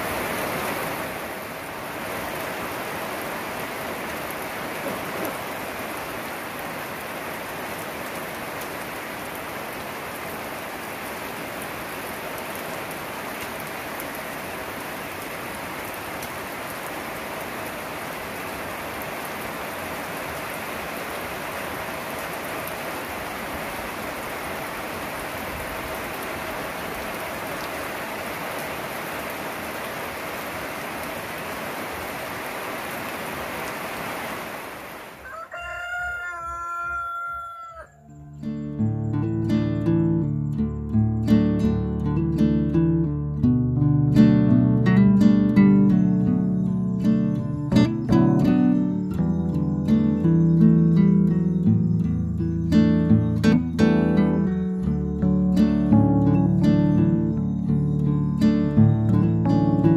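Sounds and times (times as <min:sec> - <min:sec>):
steady rain hiss: 0:00.0 - 0:42.8, 0:45.2 - 0:59.9.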